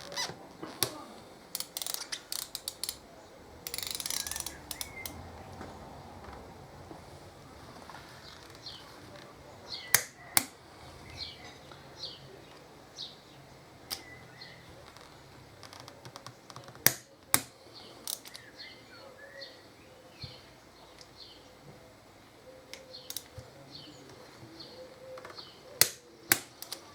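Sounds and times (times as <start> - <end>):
bird chirping: 0.0 - 26.9
torque wrench clicks: 1.5 - 3.0, 3.6 - 5.2, 9.9 - 10.6, 16.8 - 18.4, 22.7 - 23.4, 25.8 - 26.9.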